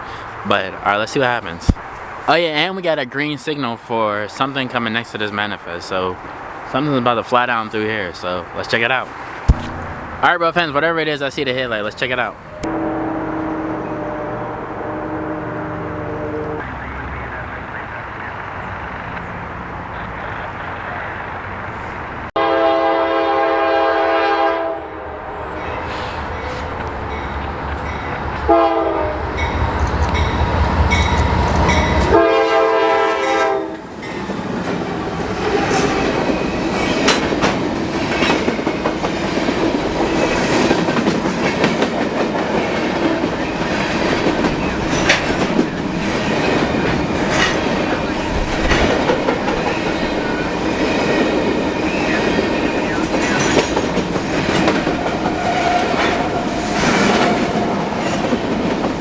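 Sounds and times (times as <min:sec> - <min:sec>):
diesel engines rumbling: 0:00.0 - 0:59.0
locomotive horn blasts: 0:12.6 - 0:18.4, 0:22.4 - 0:25.0, 0:28.4 - 0:33.8
train wheels clickety-clack: 0:33.1 - 0:59.0.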